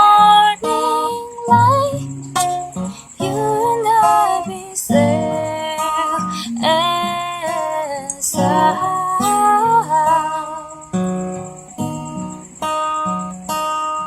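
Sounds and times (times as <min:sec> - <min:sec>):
woman singing wordless notes: 0:00.0 - 0:11.0
acoustic guitar: 0:00.0 - 0:14.0.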